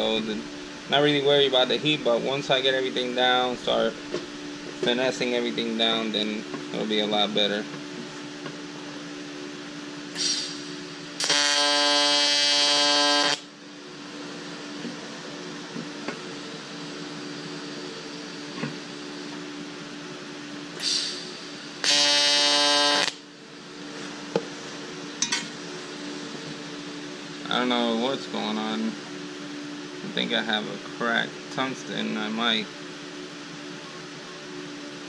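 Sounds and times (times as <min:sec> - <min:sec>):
steady machine hum: 0:00.0 - 0:35.0
welding arc buzzing: 0:10.1 - 0:13.6, 0:20.8 - 0:23.3.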